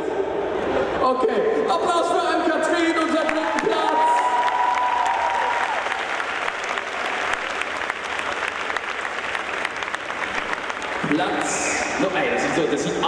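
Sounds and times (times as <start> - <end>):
audience applauding: 2.9 - 12.0.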